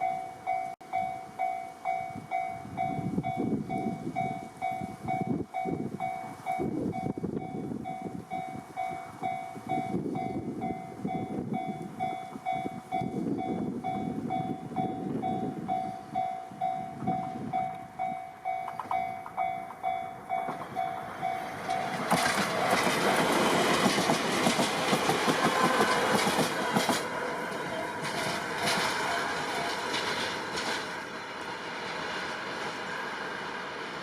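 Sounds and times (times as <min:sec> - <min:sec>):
level crossing warning bell: 0:00.0 - 0:22.7
train passing with wheel clatter: 0:00.0 - 0:34.0
wind noise on microphone: 0:02.1 - 0:18.1.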